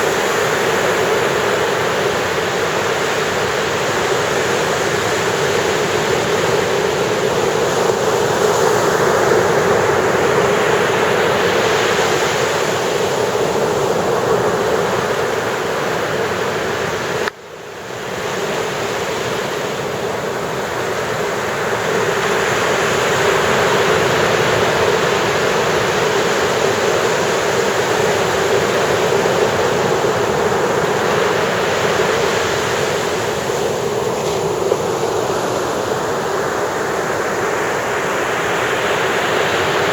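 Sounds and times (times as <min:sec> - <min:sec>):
ocean surf breaking: 0:17.9 - 0:39.9.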